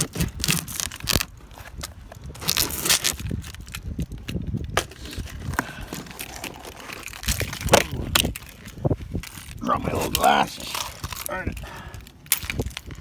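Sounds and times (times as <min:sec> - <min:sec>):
cardboard box being opened: 0:04.8 - 0:08.7.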